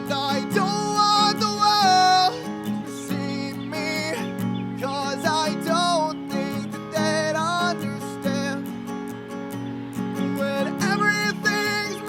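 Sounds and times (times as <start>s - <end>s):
person singing: 0.0s - 8.8s, 10.2s - 12.0s
strummed acoustic guitar: 0.0s - 12.0s.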